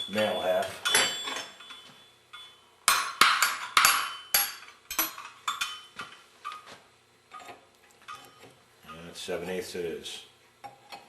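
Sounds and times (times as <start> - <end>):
wrenches clinking: 0.0 - 6.7, 7.3 - 9.1.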